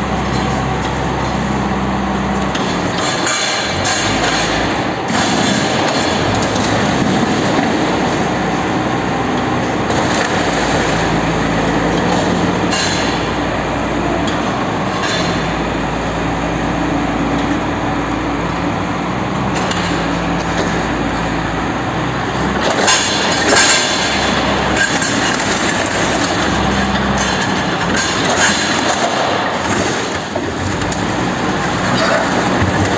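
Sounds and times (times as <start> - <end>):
heavy machinery rumbling: 0.0 - 32.9
metal clanks: 11.9 - 13.4.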